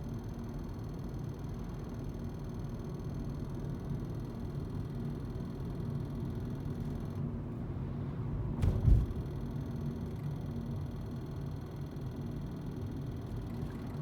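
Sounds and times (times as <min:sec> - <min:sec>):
car interior hum and rumble: 0:06.7 - 0:10.5
sharp low thump: 0:08.6 - 0:09.3.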